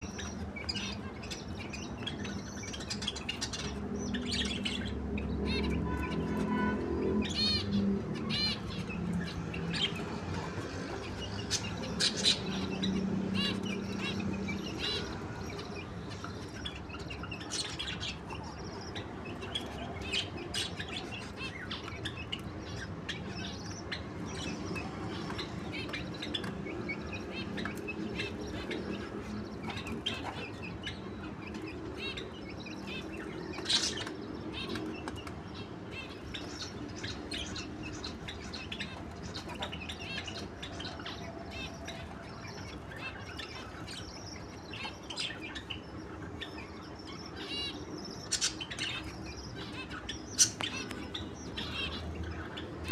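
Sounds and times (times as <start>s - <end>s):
birds chirping: 0.0s - 52.9s
loud sharp bird sounds: 0.0s - 52.9s.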